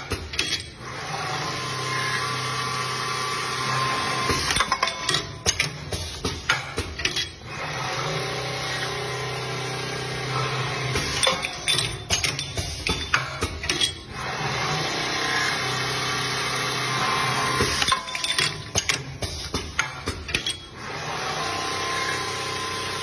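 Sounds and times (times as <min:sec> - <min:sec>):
sharp metallic clicks and clatter: 0:04.3 - 0:07.4, 0:10.9 - 0:14.4, 0:17.6 - 0:21.1
machine tool humming: 0:20.5 - 0:23.0.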